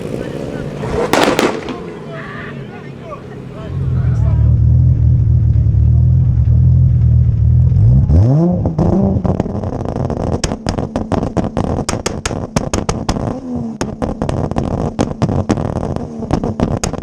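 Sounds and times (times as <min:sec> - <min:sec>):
exhaust pops and crackles: 0:00.0 - 0:02.2, 0:02.8 - 0:17.0
car engine revving: 0:00.0 - 0:17.0.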